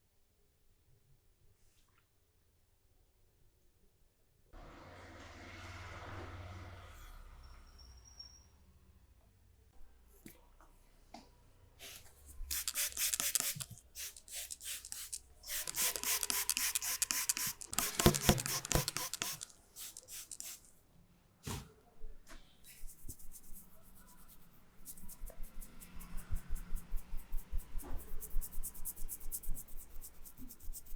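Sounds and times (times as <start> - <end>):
hands rubbing and scratching: 11.9 - 20.7, 22.6 - 30.9.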